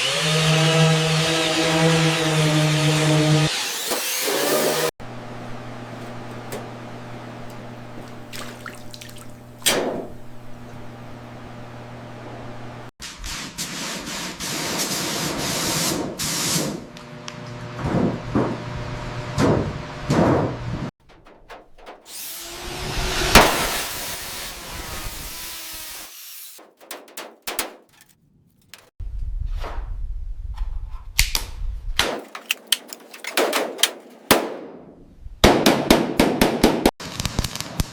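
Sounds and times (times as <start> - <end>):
low electrical hum: 5.0 - 12.9
hissing power tool: 22.1 - 26.6.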